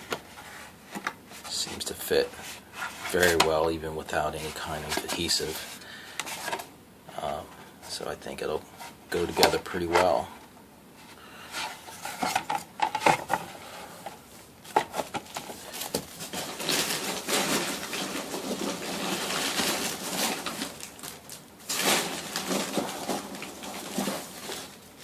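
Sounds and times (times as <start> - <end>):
packaging rustling and crinkling: 14.6 - 25.0.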